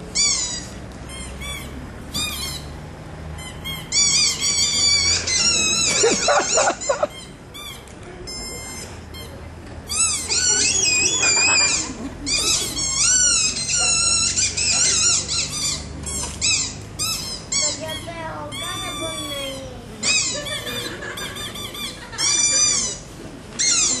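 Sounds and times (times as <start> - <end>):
high-pitched bird chirps and whistles: 9.9 - 11.7.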